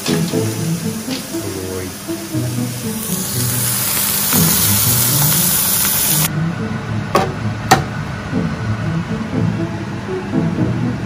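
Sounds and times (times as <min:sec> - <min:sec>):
bright steady hiss: 0:00.0 - 0:06.3
soft background music: 0:00.0 - 0:11.0.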